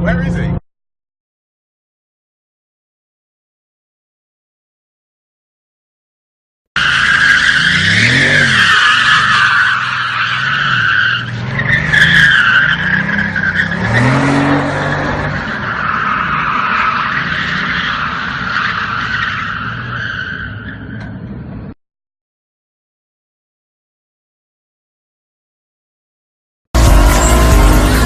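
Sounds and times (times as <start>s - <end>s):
car engine revving: 6.8s - 19.2s, 26.8s - 28.0s
car tyres squealing: 6.8s - 21.5s.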